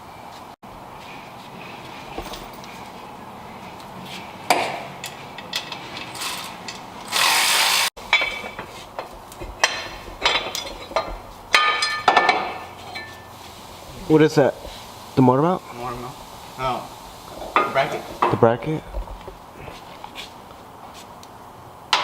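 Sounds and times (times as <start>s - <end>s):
metal tools clinking and knocking: 9.6s - 13.3s
hiss-like burst: 13.4s - 18.4s.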